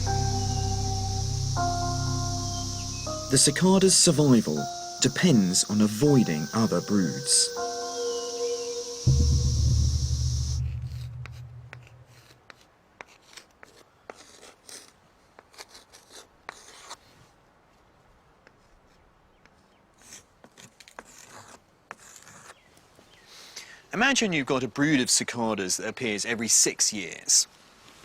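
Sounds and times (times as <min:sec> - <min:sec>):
cicada chorus: 0:00.0 - 0:11.2
deep boom: 0:09.1 - 0:12.1.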